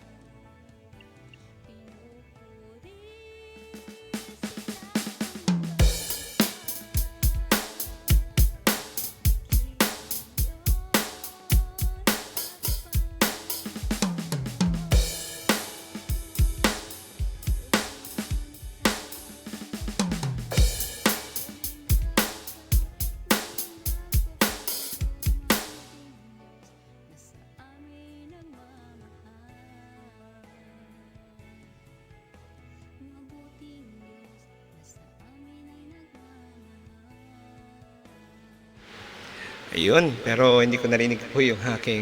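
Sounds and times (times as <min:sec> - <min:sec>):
electronic drum beat: 0:04.2 - 0:26.0
tom fills: 0:04.2 - 0:26.0, 0:38.8 - 0:42.0.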